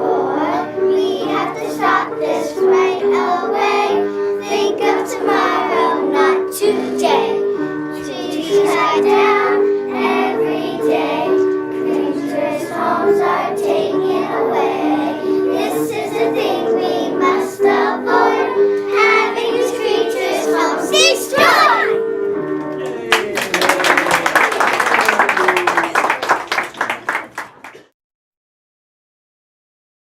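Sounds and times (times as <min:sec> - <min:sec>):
children singing together: 0:00.0 - 0:22.0
backing music: 0:00.5 - 0:26.8.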